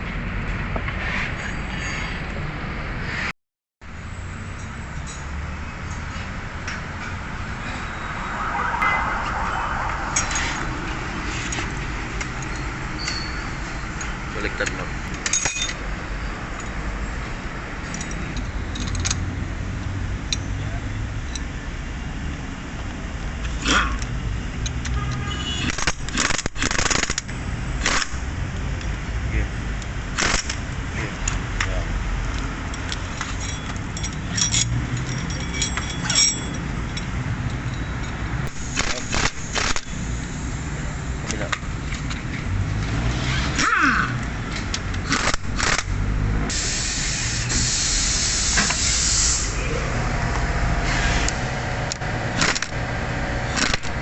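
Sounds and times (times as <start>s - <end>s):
metallic clinks of hand tools: 12.4s - 13.5s, 33.2s - 38.2s.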